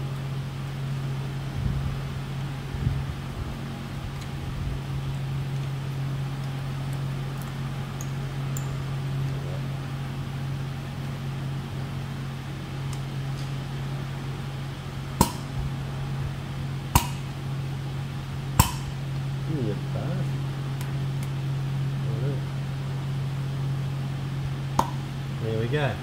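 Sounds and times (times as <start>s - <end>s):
steady low hum: 0.0s - 26.0s
sharp metallic clicks with ring: 17.0s - 17.3s, 18.6s - 19.0s.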